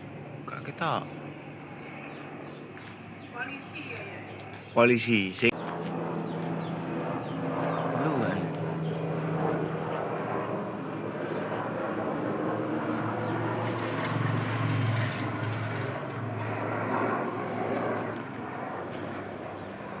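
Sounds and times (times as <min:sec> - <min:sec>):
helicopter engine and rotor drone: 0:00.0 - 0:20.0.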